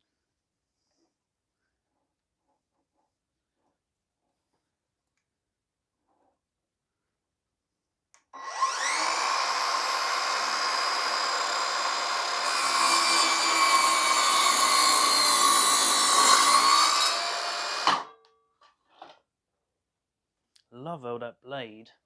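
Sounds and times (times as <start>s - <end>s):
mitre saw whining: 8.4s - 18.1s
saw cutting through wood: 8.4s - 18.1s.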